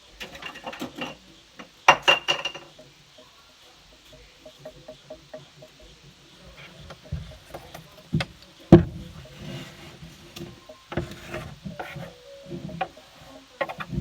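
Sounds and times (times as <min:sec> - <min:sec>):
handling knocks and thumps: 0:06.8 - 0:13.0.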